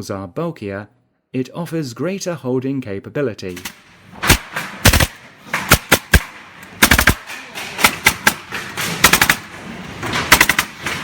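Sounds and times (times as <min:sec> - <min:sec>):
staple gun firing: 0:03.5 - 0:09.5, 0:10.3 - 0:10.9.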